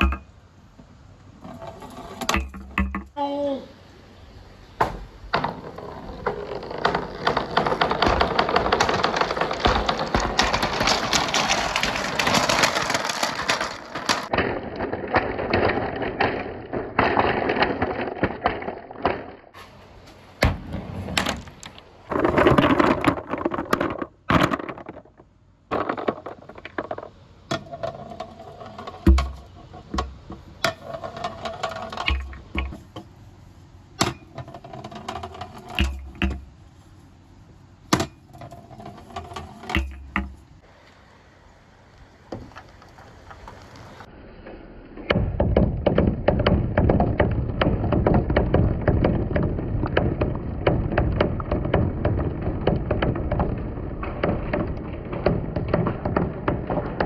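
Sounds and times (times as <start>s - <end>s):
marbles rolling on track: 5.3s - 19.6s, 21.5s - 32.9s, 34.0s - 36.5s, 38.0s - 40.4s, 45.4s - 57.0s
marbles clicking on track: 5.4s - 19.4s.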